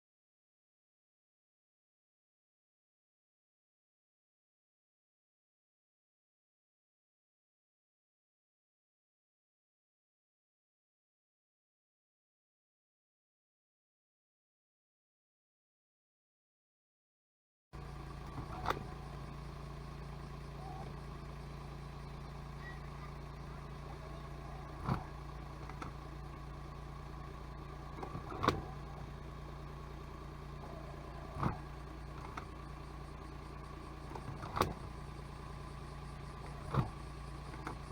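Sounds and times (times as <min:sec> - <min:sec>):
car engine and road drone: 0:17.8 - 0:37.9.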